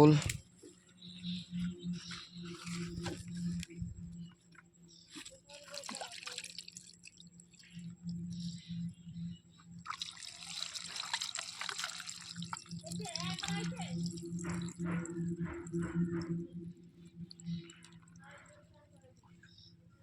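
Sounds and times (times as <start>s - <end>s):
water dripping and trickling: 5.0s - 8.7s, 9.7s - 19.5s.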